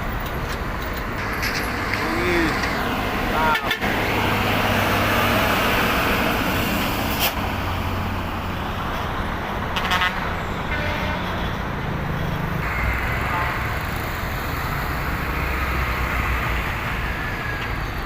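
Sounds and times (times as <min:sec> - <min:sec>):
road traffic: 0:00.0 - 0:18.0.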